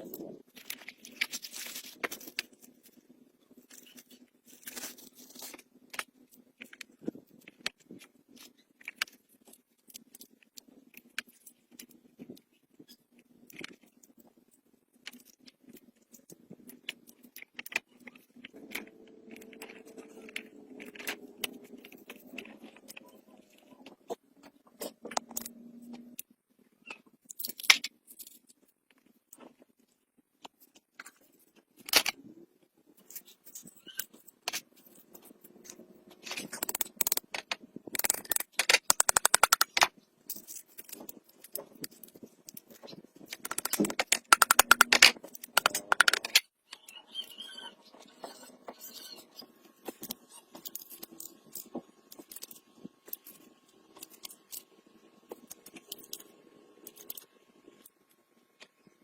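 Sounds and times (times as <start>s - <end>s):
rapid evenly spaced clicking: 38.0s - 39.8s.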